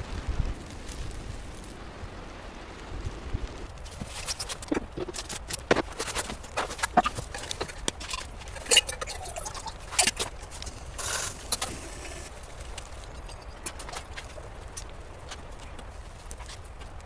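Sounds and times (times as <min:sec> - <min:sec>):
short hiss: 0:10.7 - 0:12.4.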